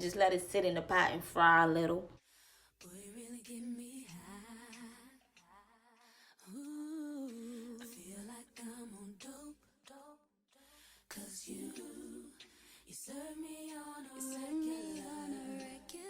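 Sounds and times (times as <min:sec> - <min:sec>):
woman singing long held notes: 0:13.2 - 0:16.0.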